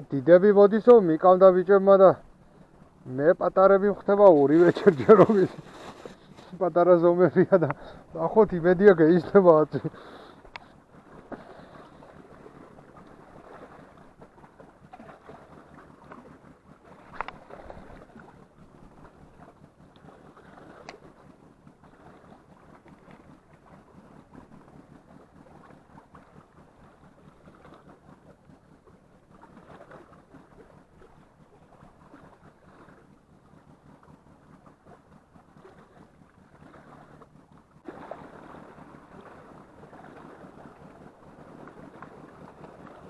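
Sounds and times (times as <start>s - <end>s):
sea surf washing: 0.0s - 24.1s, 37.8s - 43.0s.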